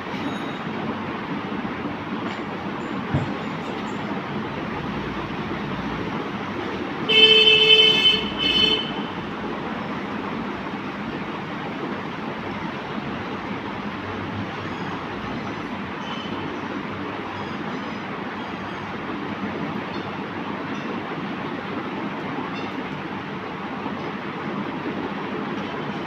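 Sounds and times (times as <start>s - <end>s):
moving vehicle running noise: 0.0s - 26.0s
vehicle horn blasts: 7.1s - 9.2s.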